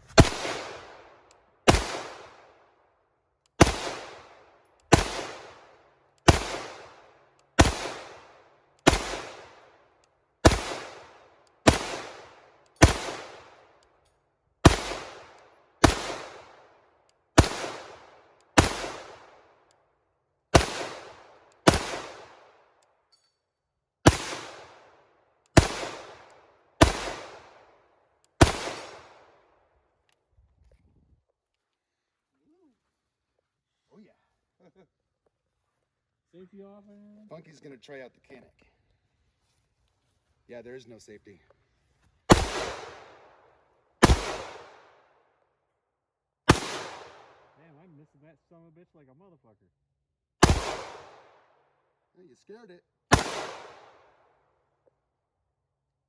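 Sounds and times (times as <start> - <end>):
pistol shots with echo: 0.1 - 2.8, 3.6 - 13.8, 14.6 - 19.7, 20.5 - 22.8, 24.0 - 29.5, 42.3 - 45.1, 46.5 - 47.6, 50.4 - 51.6, 53.1 - 54.4.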